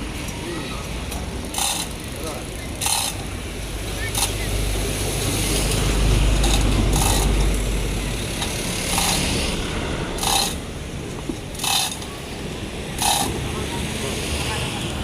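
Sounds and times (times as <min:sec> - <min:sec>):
metal ratcheting and clinking: 0:01.3 - 0:09.5, 0:10.2 - 0:10.6, 0:11.5 - 0:12.2, 0:13.0 - 0:13.4.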